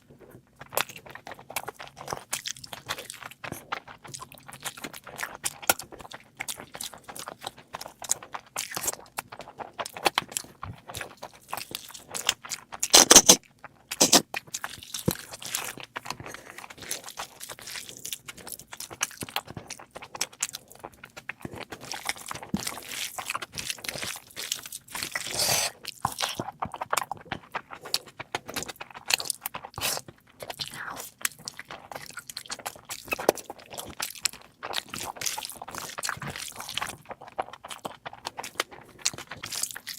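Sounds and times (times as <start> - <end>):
wet chewing and crunching: 0.0 - 39.9.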